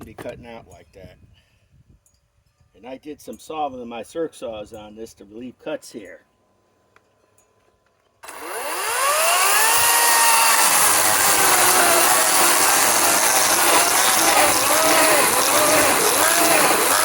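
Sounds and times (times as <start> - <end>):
chainsaw cutting wood: 8.2 - 17.0.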